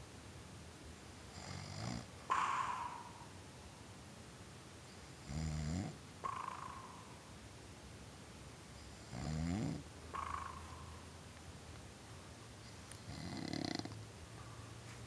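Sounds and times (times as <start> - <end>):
loud rattling snores: 1.3 - 2.1, 5.2 - 6.0, 9.0 - 9.8, 13.0 - 14.0.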